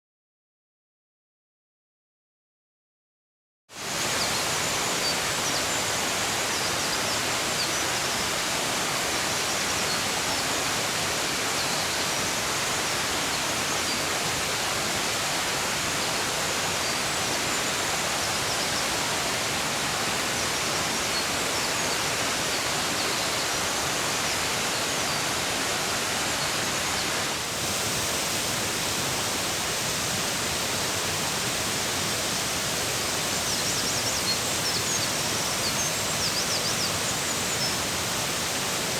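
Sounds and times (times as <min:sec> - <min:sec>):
stream rushing over rocks: 0:03.8 - 0:38.9
small birds chirping: 0:27.0 - 0:38.9.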